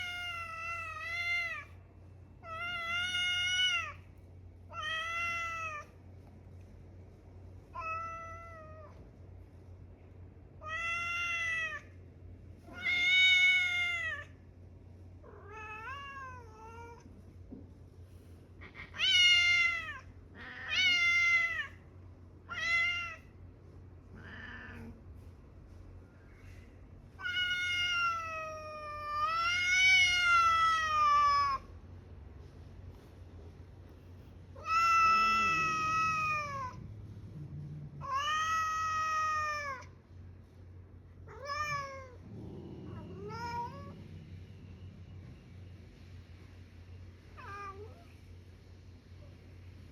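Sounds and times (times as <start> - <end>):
cat meowing: 0.0 - 1.8, 2.4 - 4.1, 4.7 - 6.0, 7.7 - 9.0, 10.6 - 12.0, 12.6 - 14.4, 15.2 - 17.1, 18.6 - 21.8, 22.5 - 23.3, 24.1 - 25.0, 27.2 - 31.7, 34.6 - 36.8, 38.0 - 40.0, 41.2 - 42.2, 42.9 - 44.2
faint low hum: 0.0 - 49.9.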